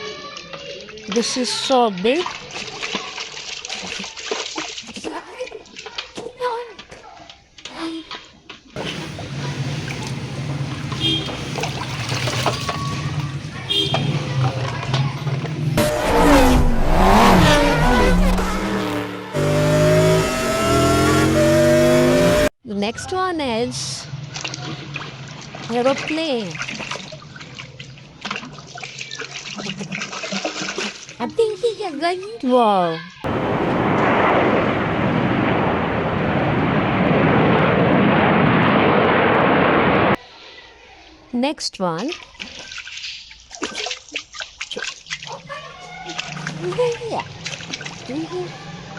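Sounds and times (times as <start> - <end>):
car engine revving: 13.2 - 22.6
steady engine run: 13.4 - 22.5.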